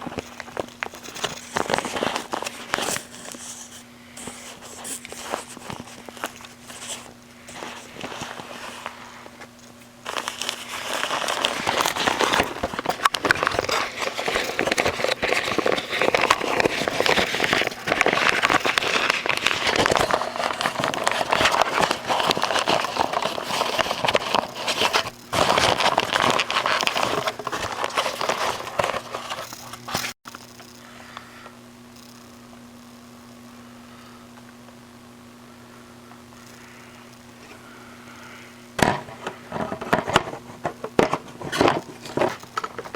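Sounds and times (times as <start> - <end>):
bag crinkling and rustling: 0.0 - 30.2
low steady hum: 0.0 - 42.9.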